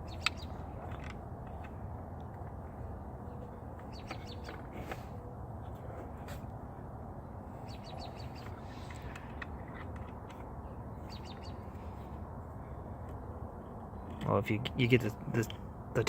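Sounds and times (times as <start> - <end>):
small bird chirping: 0.0 - 0.6, 3.3 - 4.6, 7.6 - 9.0, 10.6 - 12.1.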